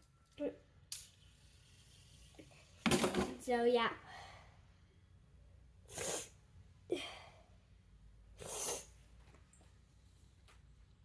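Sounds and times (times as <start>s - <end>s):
person sniffing: 5.9s - 6.4s, 8.4s - 9.0s.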